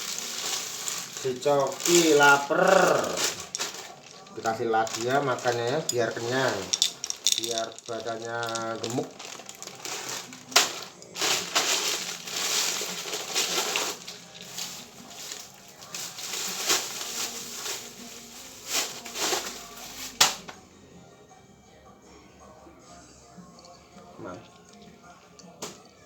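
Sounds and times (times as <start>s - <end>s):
crinkling and crunching: 0.0s - 20.6s.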